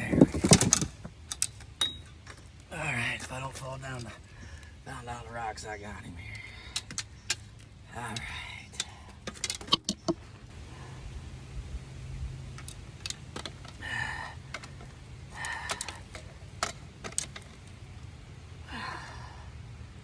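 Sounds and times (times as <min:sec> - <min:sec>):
handling clicks and knocks: 0:00.0 - 0:04.7, 0:06.3 - 0:10.5, 0:12.5 - 0:13.8, 0:14.4 - 0:18.1
man breathing hard: 0:04.2 - 0:04.8, 0:06.2 - 0:07.3, 0:13.7 - 0:16.6, 0:18.6 - 0:19.8.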